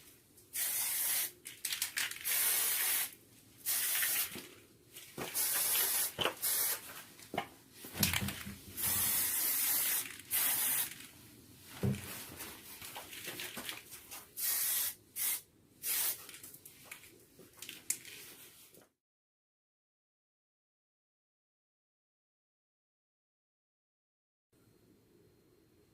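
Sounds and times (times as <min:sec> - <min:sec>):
aerosol spray can spraying: 0:00.6 - 0:01.3, 0:02.1 - 0:04.4, 0:05.2 - 0:07.0, 0:08.8 - 0:11.0, 0:14.4 - 0:16.2.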